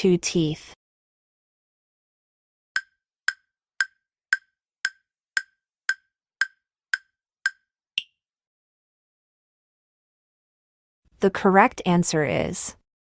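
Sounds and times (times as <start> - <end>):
countdown timer ticks: 2.8 - 8.1.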